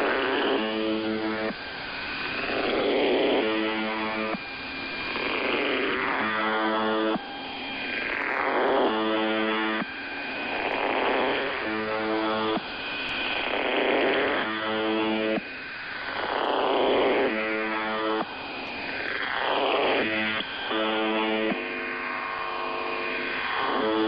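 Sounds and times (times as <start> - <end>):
harsh radio buzz tone: 0.0 - 24.0
shortwave static hiss: 0.0 - 24.0.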